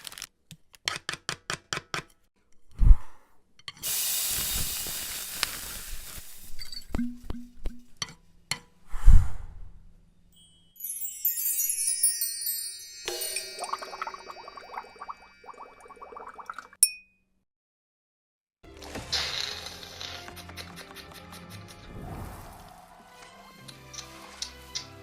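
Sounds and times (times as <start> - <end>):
steady hiss: 3.8 - 6.7
chiming tune: 10.3 - 16.4.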